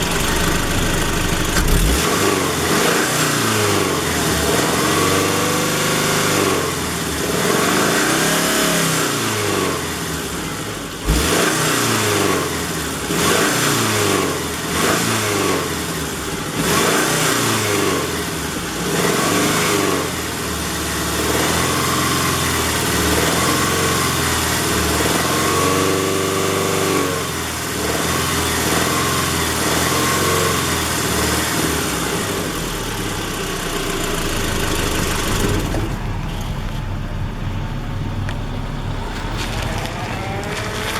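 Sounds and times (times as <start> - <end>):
sharp engine knock: 0.0 - 2.3
car engine revving: 0.0 - 40.9.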